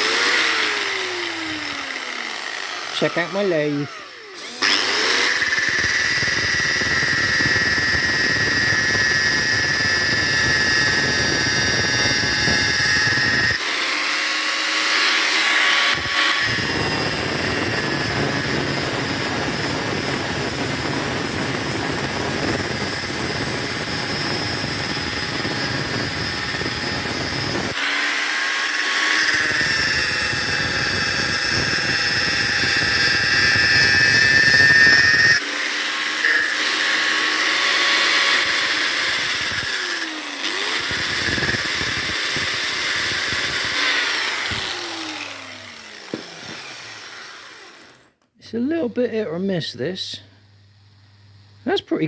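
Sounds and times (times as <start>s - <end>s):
power drill whining: 0.0s - 48.3s
metal pin grinding: 5.2s - 13.6s, 28.7s - 35.4s, 36.2s - 44.8s.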